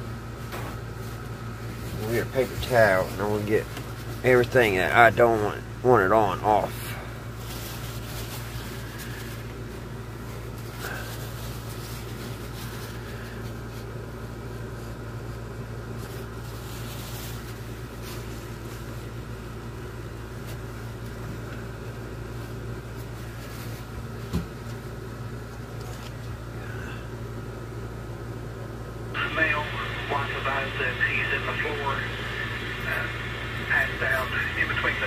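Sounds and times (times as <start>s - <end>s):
steady low hum: 0.0s - 35.0s
paper towel rubbing: 7.3s - 14.0s, 15.9s - 19.2s.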